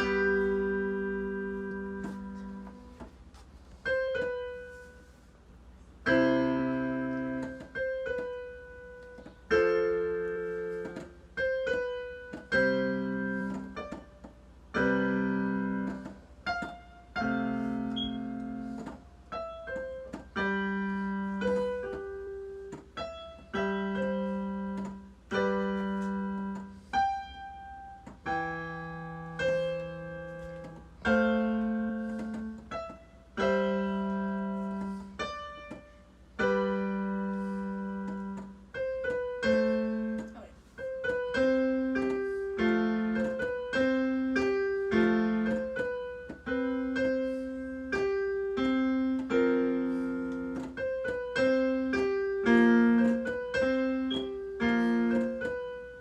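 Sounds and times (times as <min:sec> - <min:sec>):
solo piano playing: 0:00.0 - 0:56.0.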